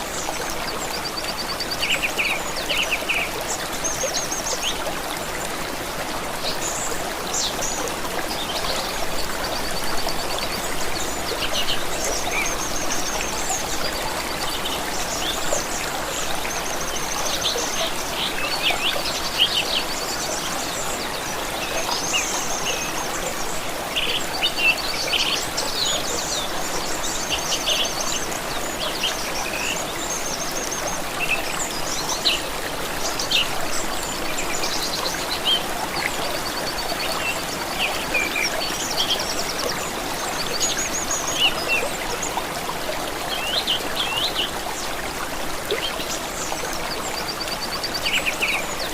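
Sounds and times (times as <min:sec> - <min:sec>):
running water rushing: 0:00.0 - 0:48.9.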